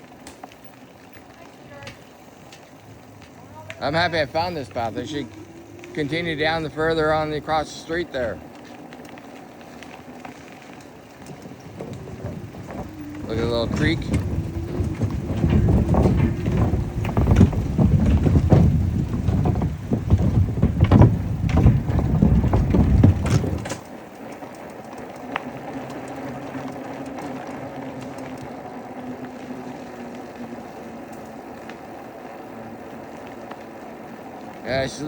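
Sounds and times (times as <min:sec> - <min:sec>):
bike bumping and rattling: 0:00.0 - 0:35.0
wind buffeting microphone: 0:11.2 - 0:23.8.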